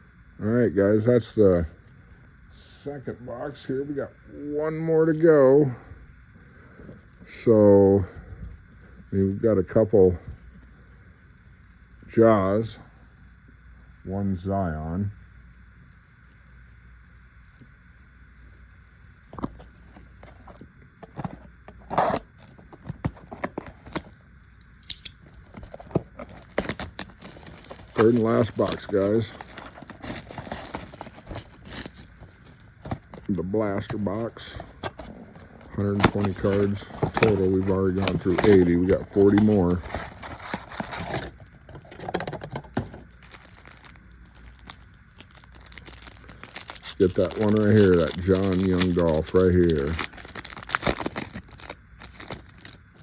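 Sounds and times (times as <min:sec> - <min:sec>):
foil packs crinkling: 0:19.4 - 0:24.2, 0:24.8 - 0:53.0
rustling scrape: 0:25.3 - 0:33.3, 0:33.9 - 0:46.8.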